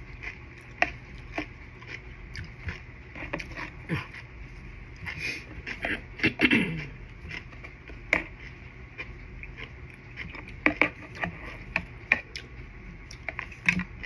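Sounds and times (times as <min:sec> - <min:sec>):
person chewing with wet clicks: 0:00.0 - 0:14.0.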